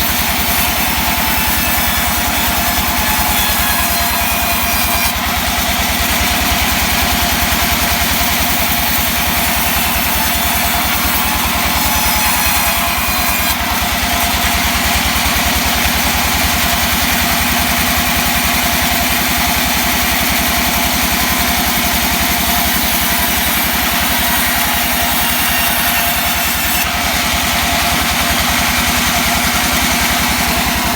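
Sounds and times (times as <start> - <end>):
saw engine running: 0.0 - 30.9.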